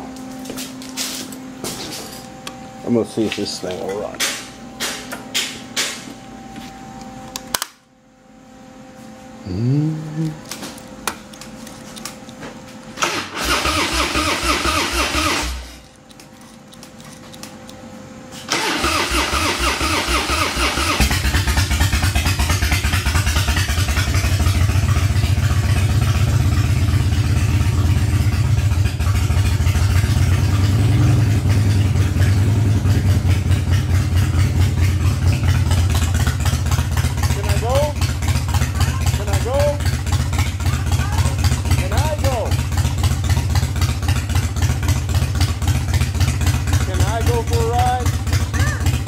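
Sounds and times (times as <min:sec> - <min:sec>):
motorcycle engine cranking: 0:13.0 - 0:17.5, 0:18.5 - 0:24.8
motorcycle engine idling: 0:20.3 - 0:49.0.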